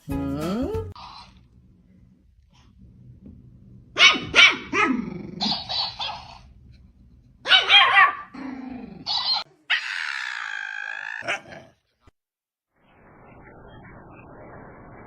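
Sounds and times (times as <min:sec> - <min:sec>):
dog barking and yowling: 0:04.0 - 0:06.4, 0:07.4 - 0:08.4, 0:09.0 - 0:11.8.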